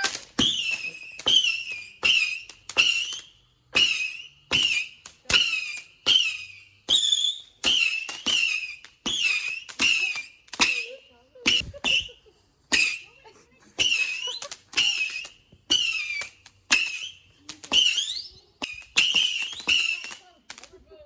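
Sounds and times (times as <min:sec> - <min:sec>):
firework whistling shots: 0:00.0 - 0:20.7.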